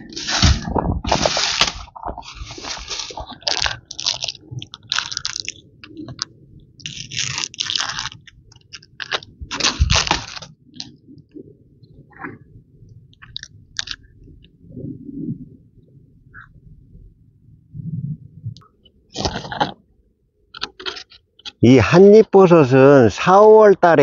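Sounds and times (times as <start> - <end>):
dry crunching and crackling: 0.0 - 11.4, 13.2 - 14.5, 19.1 - 19.8.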